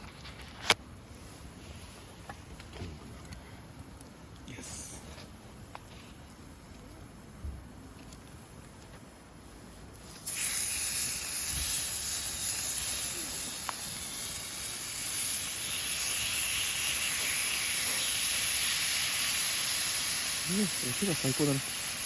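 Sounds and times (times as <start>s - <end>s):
meat sizzling on a griddle: 10.0s - 22.0s.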